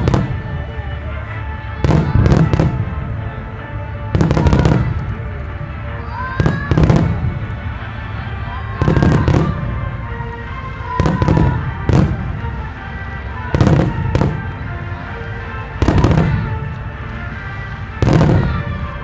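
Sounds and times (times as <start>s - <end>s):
fireworks bangs with echo: 0.0s - 7.8s, 8.7s - 14.8s, 15.5s - 19.0s.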